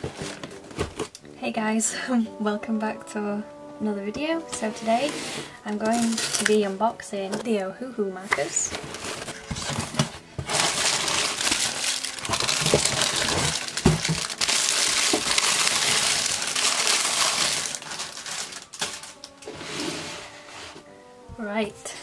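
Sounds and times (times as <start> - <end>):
packaging crinkling: 5.0 - 6.6, 8.4 - 19.5.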